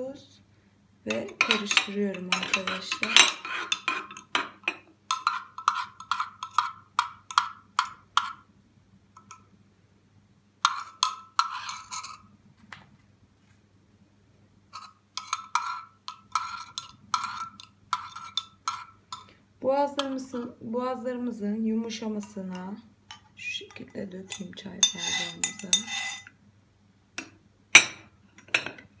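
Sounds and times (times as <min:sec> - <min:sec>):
spoon clinking against pot: 0:01.1 - 0:08.4, 0:10.6 - 0:12.2, 0:14.8 - 0:19.4, 0:22.2 - 0:26.3.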